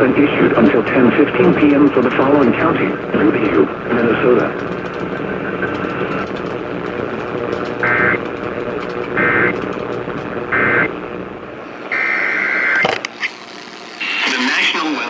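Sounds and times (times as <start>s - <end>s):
broadcast background noise: 0.0s - 15.0s
two-tone digital data screech: 7.8s - 8.2s, 9.1s - 9.6s, 10.5s - 10.9s, 11.7s - 14.8s.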